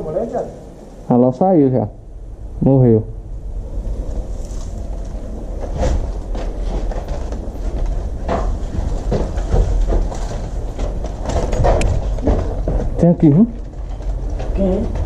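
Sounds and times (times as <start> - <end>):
sharp knocks and clicks: 5.6 - 15.0.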